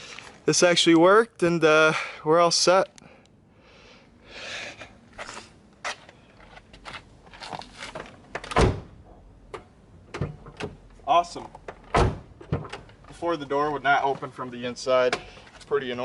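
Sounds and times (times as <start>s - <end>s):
car door thunk: 8.4s - 10.8s, 11.7s - 12.9s.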